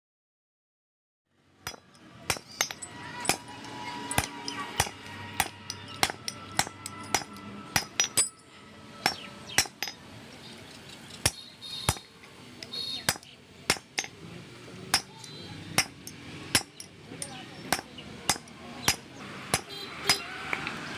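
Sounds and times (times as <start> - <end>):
hammer striking metal: 1.6 - 10.1, 11.2 - 12.2, 13.0 - 14.2, 14.9 - 20.3.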